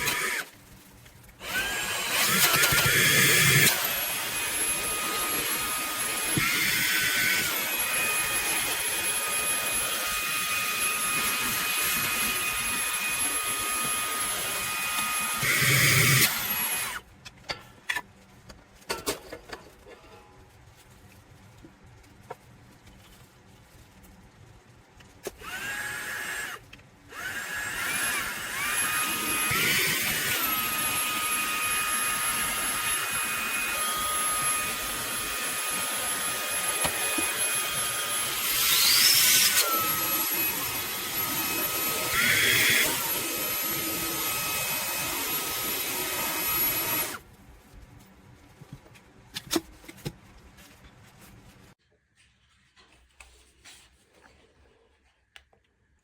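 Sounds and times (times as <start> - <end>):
handheld vacuum motor whine: 0.0 - 0.5, 1.4 - 17.0, 25.2 - 47.2.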